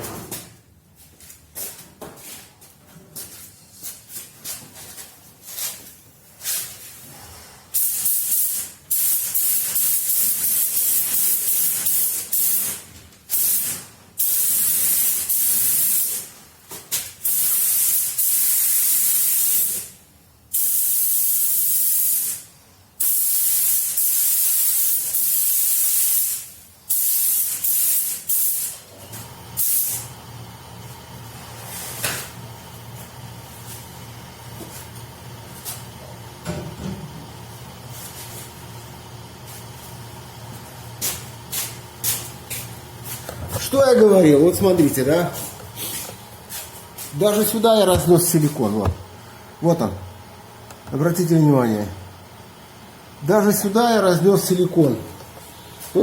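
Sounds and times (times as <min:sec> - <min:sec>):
paint spray gun hissing: 0:07.8 - 0:16.3, 0:17.3 - 0:19.9, 0:23.0 - 0:28.8.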